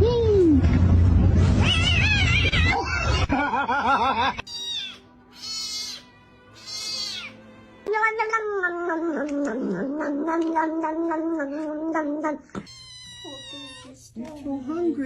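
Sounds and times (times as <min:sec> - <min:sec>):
cat meowing: 0:01.6 - 0:02.8, 0:04.4 - 0:14.0.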